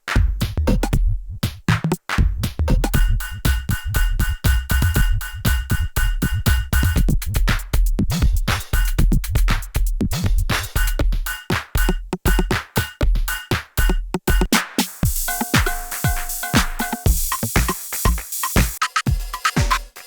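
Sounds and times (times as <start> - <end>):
drum machine beat: 0.0 - 20.0
hissing cymbal: 14.9 - 20.0.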